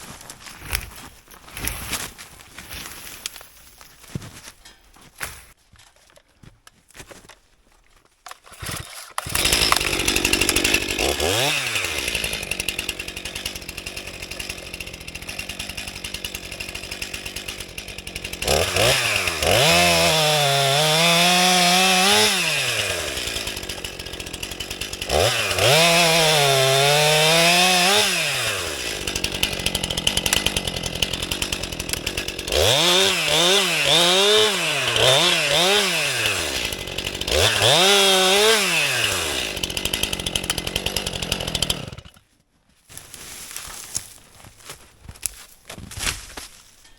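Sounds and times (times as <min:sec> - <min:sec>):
chainsaw cutting logs: 0:08.2 - 0:42.3
chainsaw revving: 0:08.5 - 0:42.2.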